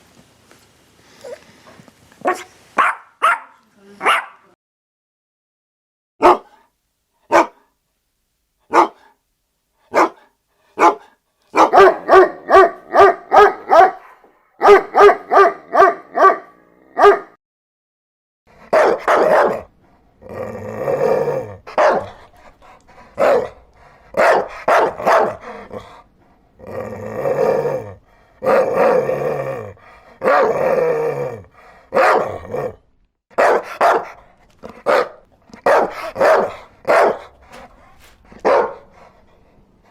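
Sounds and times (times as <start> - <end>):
dog barking: 2.2 - 4.5, 6.2 - 6.7, 7.3 - 7.7, 8.7 - 9.2, 9.9 - 17.4, 18.6 - 19.7, 21.7 - 22.3, 23.2 - 25.9, 30.2 - 30.6, 31.9 - 37.7, 38.3 - 39.0.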